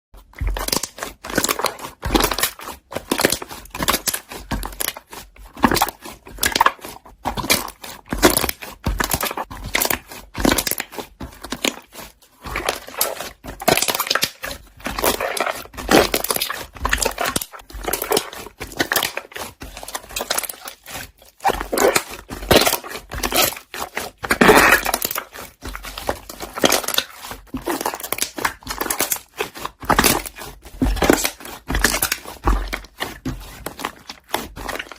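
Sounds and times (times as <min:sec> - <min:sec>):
slime air bubbles popping: 0:24.3 - 0:25.0.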